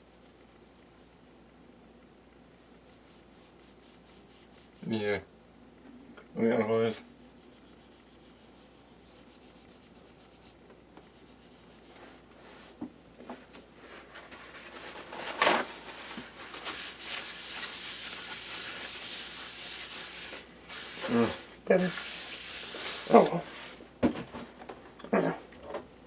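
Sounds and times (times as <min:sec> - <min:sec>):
scraping rubbing sound: 0:07.2 - 0:12.8, 0:13.8 - 0:23.9.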